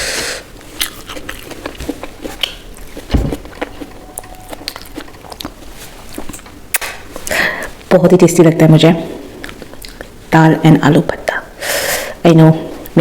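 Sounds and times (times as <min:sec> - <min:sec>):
person chewing food: 0:00.2 - 0:06.4
low thump: 0:03.1 - 0:03.7.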